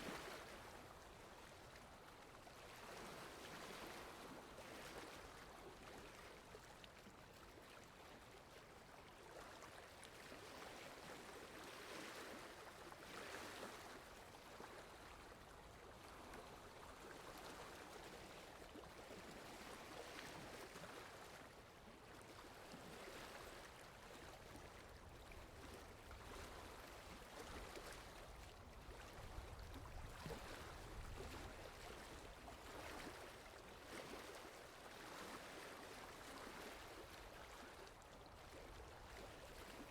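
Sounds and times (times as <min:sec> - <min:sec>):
lake water lapping: 0:00.0 - 0:39.9.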